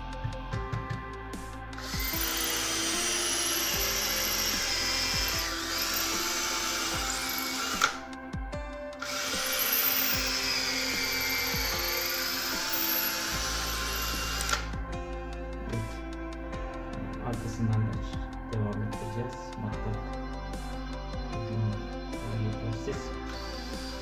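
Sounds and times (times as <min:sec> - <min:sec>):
electric drill boring into wood: 0:01.8 - 0:08.2, 0:09.0 - 0:14.8, 0:23.0 - 0:24.0.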